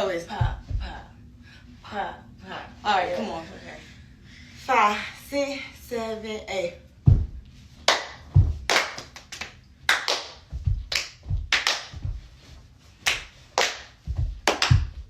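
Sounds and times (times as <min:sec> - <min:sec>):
foot stomps: 0:00.4 - 0:01.0, 0:07.1 - 0:07.4, 0:08.2 - 0:08.9, 0:10.5 - 0:12.5, 0:13.1 - 0:15.0
hand claps: 0:07.8 - 0:12.1, 0:13.0 - 0:15.0.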